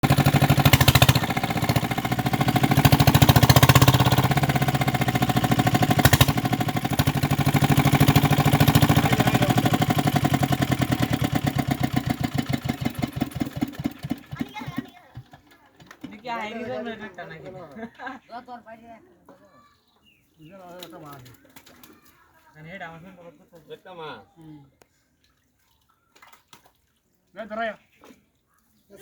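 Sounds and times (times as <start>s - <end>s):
small engine running: 0.0s - 15.5s.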